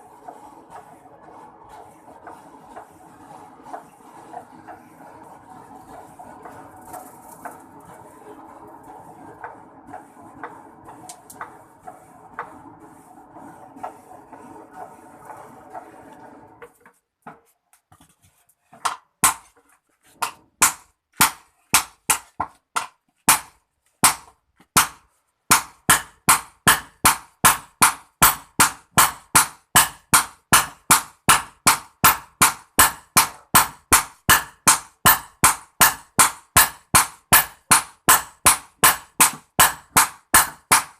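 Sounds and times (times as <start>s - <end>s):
steady hum: 0.0s - 16.6s
hammer striking metal on anvil: 24.8s - 40.9s.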